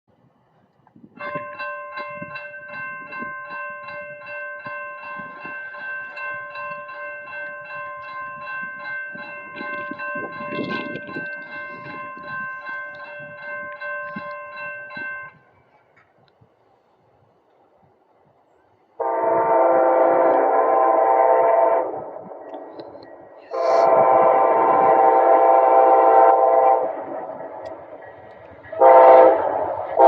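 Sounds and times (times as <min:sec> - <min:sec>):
locomotive air horn blast: 0:19.0 - 0:22.2, 0:23.5 - 0:27.3, 0:28.8 - 0:30.0.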